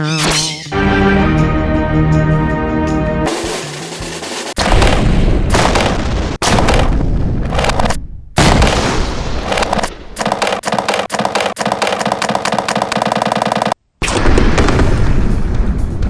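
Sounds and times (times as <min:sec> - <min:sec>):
rapid gunfire-like shots: 0:03.3 - 0:13.8
explosion booms: 0:14.1 - 0:16.0.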